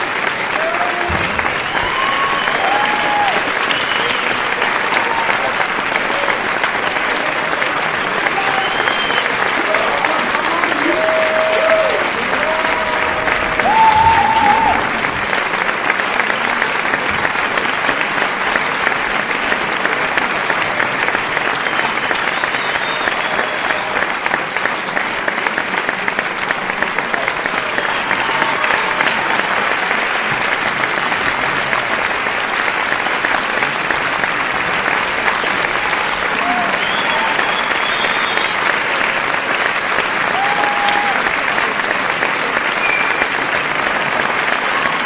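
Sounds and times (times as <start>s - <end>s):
crowd applauding: 0.0s - 45.0s.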